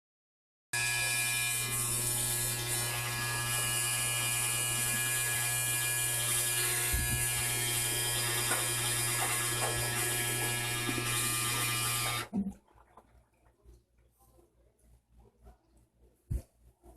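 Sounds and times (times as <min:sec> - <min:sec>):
washer-dryer loud tonal noise: 0:00.8 - 0:12.5.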